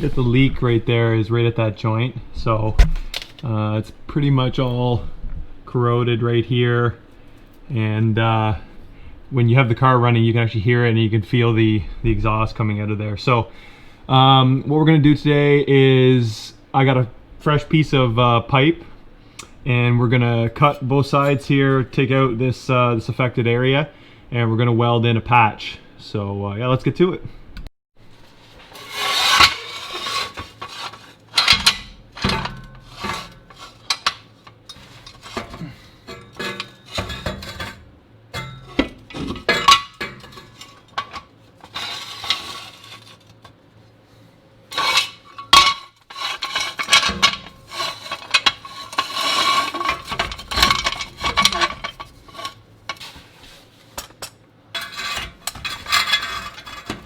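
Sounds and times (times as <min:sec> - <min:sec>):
tools scraping metal pipe: 0:28.6 - 0:43.5, 0:44.7 - 0:57.0
metal clanking and clinking: 0:29.0 - 0:43.3, 0:44.7 - 0:53.1, 0:54.0 - 0:57.0.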